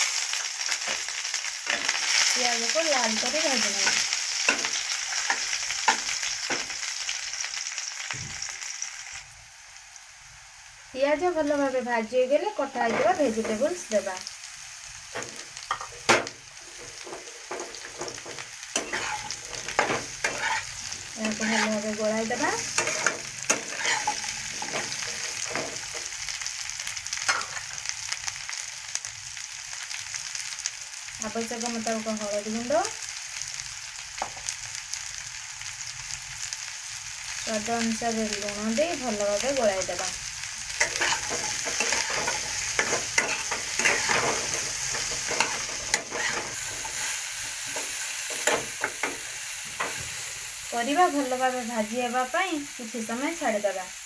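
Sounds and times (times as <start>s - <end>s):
vegetables sizzling in oil: 0.0s - 54.0s
spoon scraping pan: 15.2s - 26.2s, 27.3s - 27.8s, 40.8s - 50.4s.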